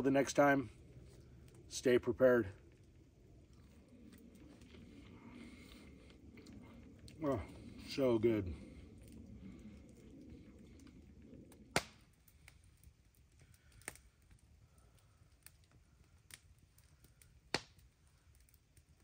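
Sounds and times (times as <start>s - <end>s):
campfire crackling: 0.0s - 19.0s
sharp fire pops: 4.0s - 19.0s.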